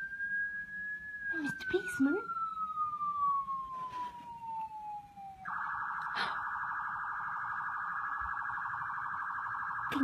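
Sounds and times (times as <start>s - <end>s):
police siren wailing and yelping: 0.0s - 10.0s.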